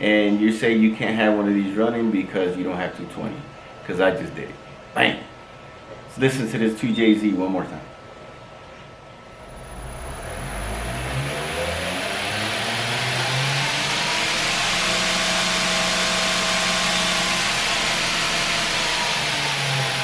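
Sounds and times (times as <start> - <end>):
belt grinder motor whine: 9.4 - 20.0
belt grinder whirring: 9.4 - 20.0.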